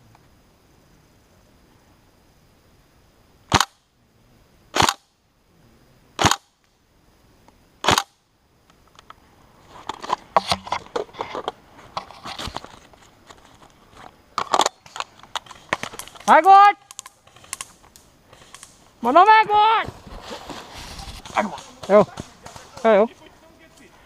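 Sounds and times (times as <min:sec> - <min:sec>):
airsoft rifle shots: 0:03.5 - 0:03.8, 0:04.8 - 0:05.1, 0:06.2 - 0:06.5, 0:07.8 - 0:08.2, 0:21.3 - 0:23.0
clicks and rustling: 0:08.7 - 0:19.0, 0:19.8 - 0:23.9.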